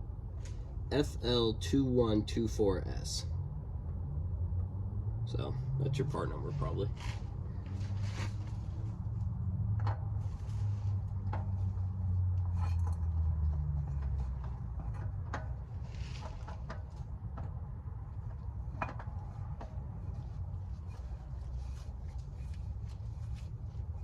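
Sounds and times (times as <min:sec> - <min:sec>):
steady low hum: 0:00.0 - 0:24.0
oil filter clicks and knocks: 0:09.7 - 0:10.2, 0:11.1 - 0:20.0.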